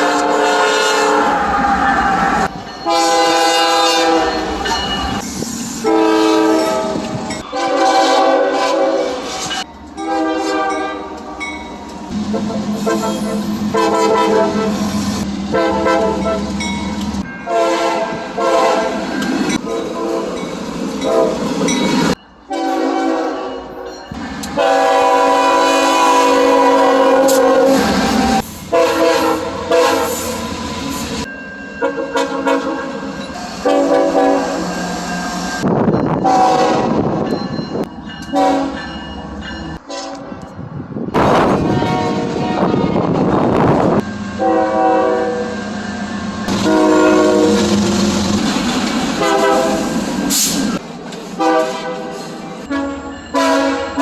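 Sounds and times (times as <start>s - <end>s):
train horn blasts: 0.0s - 4.8s, 5.8s - 11.5s, 12.2s - 16.6s, 17.4s - 19.0s, 19.6s - 20.4s, 21.0s - 21.5s, 22.5s - 23.9s, 24.5s - 30.6s, 31.8s - 34.9s, 36.2s - 37.2s, 38.3s - 38.9s, 39.8s - 40.4s, 41.2s - 45.7s, 46.5s - 48.0s, 49.2s - 49.9s, 51.4s - 54.0s.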